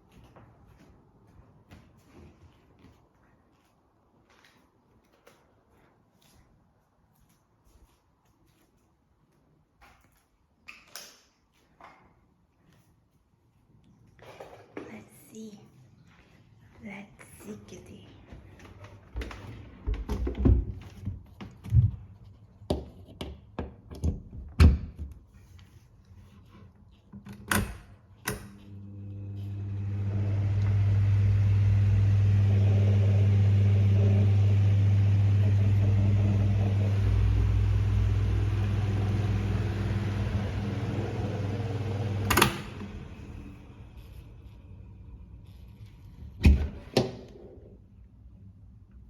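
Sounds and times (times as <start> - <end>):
microwave oven humming: 28.4 - 45.0
microwave click: 37.2 - 42.9.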